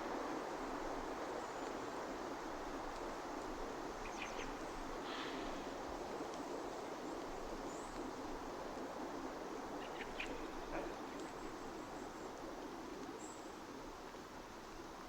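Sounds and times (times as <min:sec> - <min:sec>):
background hiss: 0:00.0 - 0:15.0.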